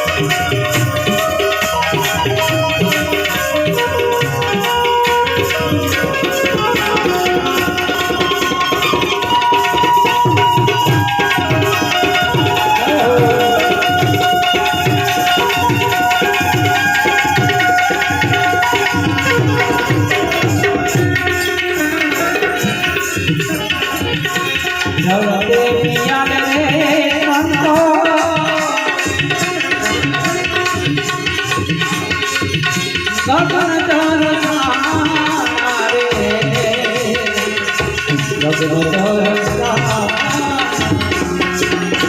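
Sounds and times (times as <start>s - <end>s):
hand drum beat: 0.0s - 26.8s, 36.2s - 42.0s
harmonium melody: 0.0s - 42.0s.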